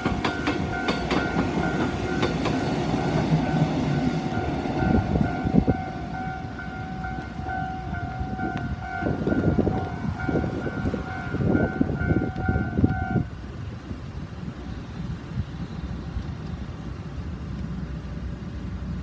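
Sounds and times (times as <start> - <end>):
level-crossing warning bell: 0.0 - 13.4
train rumble and wheel clatter: 0.0 - 19.0.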